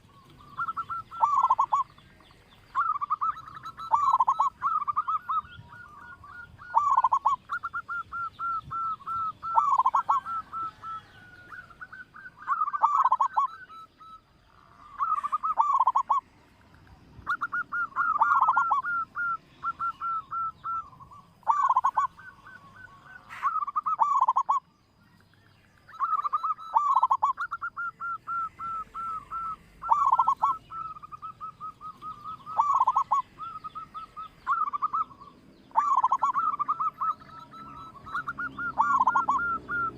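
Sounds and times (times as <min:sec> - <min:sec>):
dove cooing: 0:00.0 - 0:24.7, 0:25.9 - 0:39.9
small bird chirping: 0:00.0 - 0:39.9.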